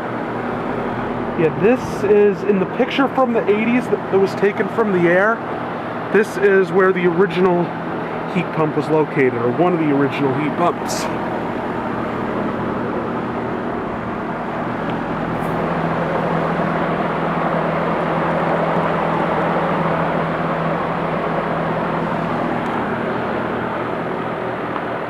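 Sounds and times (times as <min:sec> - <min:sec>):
low hum: 0:00.0 - 0:08.8, 0:09.5 - 0:25.0
fan rushing: 0:00.0 - 0:25.0.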